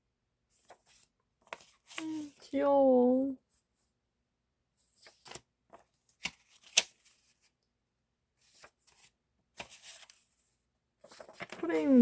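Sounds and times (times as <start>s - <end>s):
paper packaging rustling: 11.0s - 12.0s.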